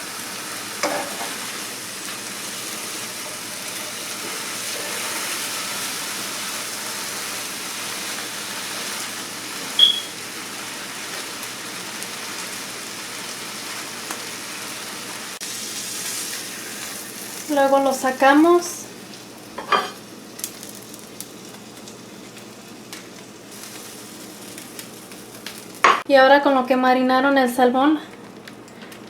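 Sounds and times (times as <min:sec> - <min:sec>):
fish sizzling in a pan: 0:00.0 - 0:26.1
sharp high squeak: 0:09.8 - 0:10.1.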